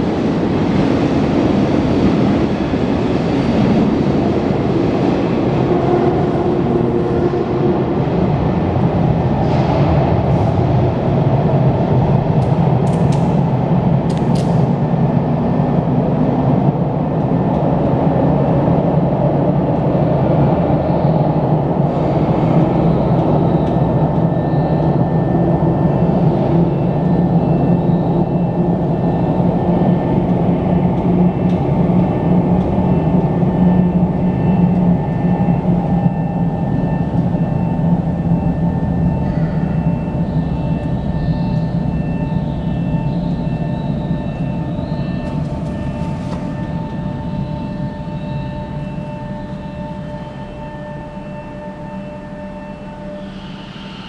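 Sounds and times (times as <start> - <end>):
air conditioning drone: 0.0 - 54.0
high electronic warning tones: 22.8 - 54.0.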